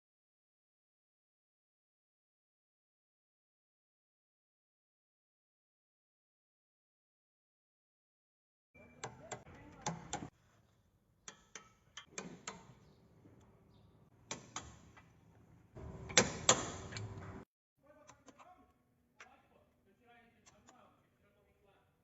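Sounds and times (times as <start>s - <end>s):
sharp clicks and knocks: 11.2s - 13.5s, 14.2s - 17.4s.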